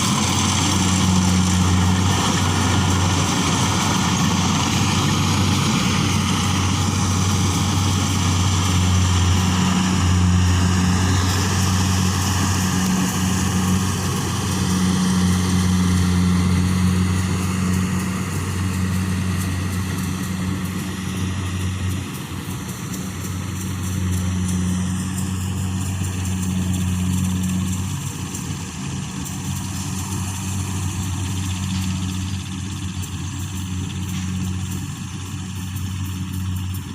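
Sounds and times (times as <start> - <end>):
combine harvester engine drone: 0.0 - 36.9
machinery hiss: 0.0 - 36.9.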